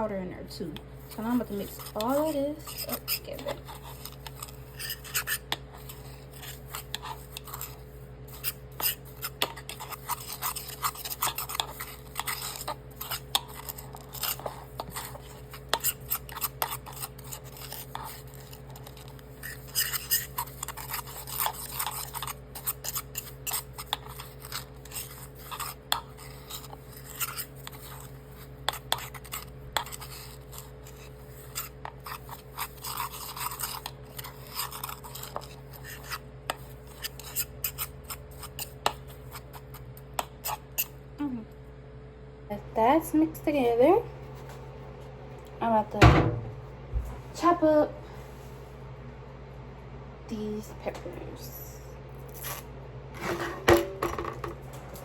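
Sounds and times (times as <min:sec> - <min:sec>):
utensil scraping a bowl: 0:00.6 - 0:41.0, 0:52.3 - 0:55.0.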